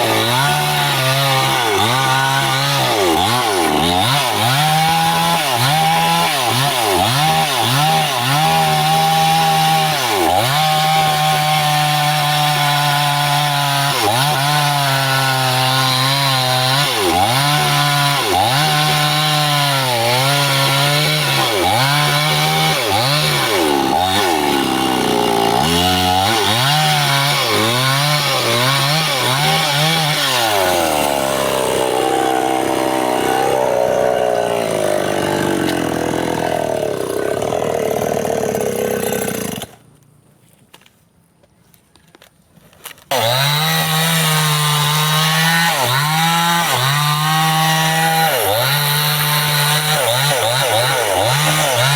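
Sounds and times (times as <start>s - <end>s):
chainsaw cutting wood: 0.0s - 40.1s, 42.8s - 51.9s.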